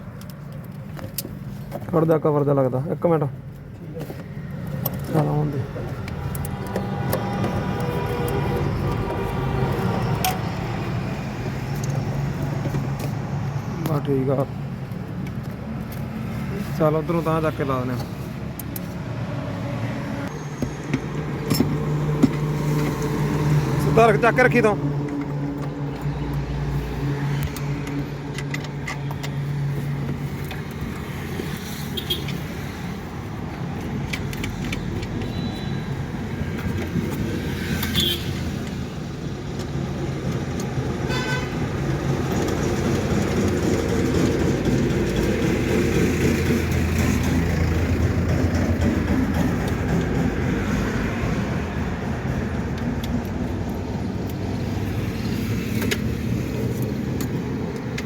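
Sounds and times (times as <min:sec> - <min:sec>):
road traffic noise: 0:00.0 - 0:58.0
car horn toot: 0:37.9 - 0:38.4, 0:41.1 - 0:41.6.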